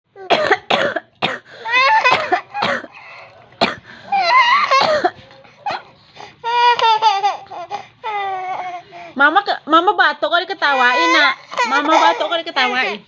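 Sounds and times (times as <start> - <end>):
woman coughing: 0.2 - 3.0, 3.6 - 5.8.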